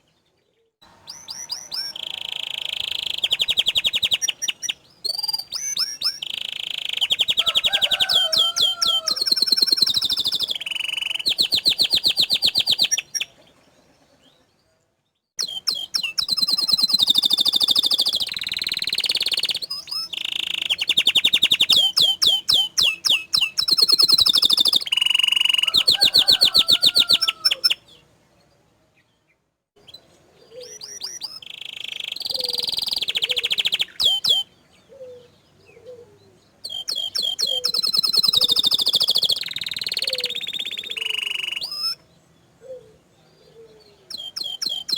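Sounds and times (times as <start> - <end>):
canary singing rolling trills: 0.0 - 29.1, 29.8 - 44.9.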